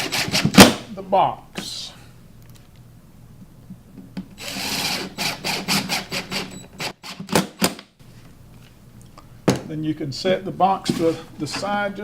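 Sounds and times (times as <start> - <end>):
power drill driving a screw: 4.4 - 7.4.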